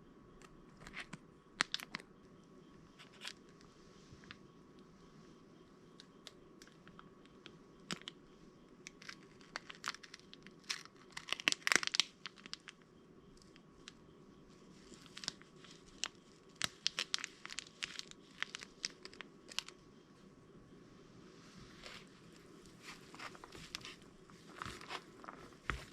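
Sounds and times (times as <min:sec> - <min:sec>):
crinkling and tearing: 0:08.9 - 0:12.8, 0:14.9 - 0:19.8, 0:22.7 - 0:25.9.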